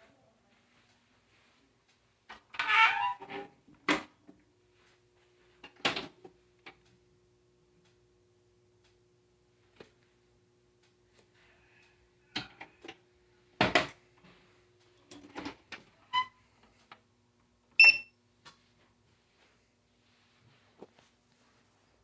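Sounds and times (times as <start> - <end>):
faint steady hum: 0.0 - 22.0
short beeps: 17.8 - 18.1.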